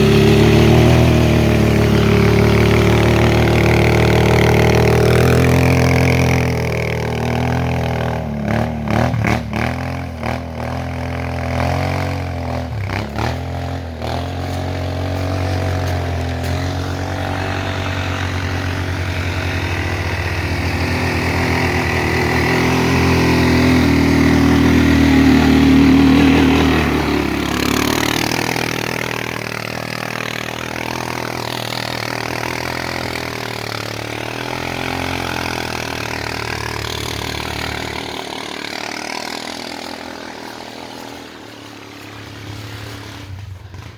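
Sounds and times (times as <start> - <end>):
atv engine running: 0.0 - 43.9.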